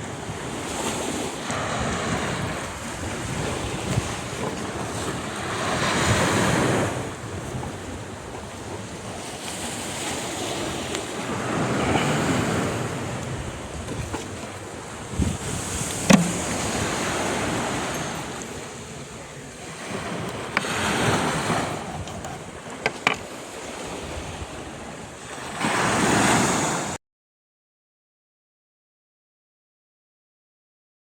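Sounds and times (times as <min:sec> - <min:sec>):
wind buffeting microphone: 0:00.0 - 0:26.0
sea waves washing on shore: 0:00.0 - 0:27.0.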